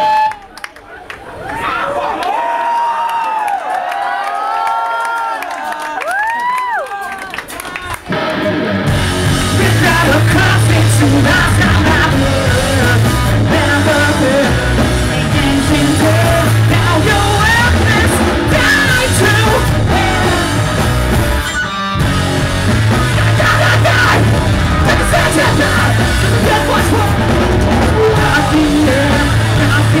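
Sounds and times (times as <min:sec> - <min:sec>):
drums: 0:07.0 - 0:30.0
bass guitar: 0:08.0 - 0:30.0
distorted guitars: 0:08.0 - 0:30.0
person singing and yelling: 0:09.4 - 0:20.8, 0:22.9 - 0:30.0.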